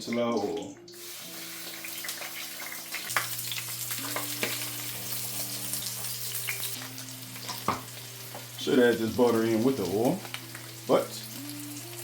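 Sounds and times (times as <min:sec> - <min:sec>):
chicken frying in hot oil: 0:00.0 - 0:05.4, 0:06.0 - 0:12.0
oil crackling and popping: 0:00.1 - 0:12.0.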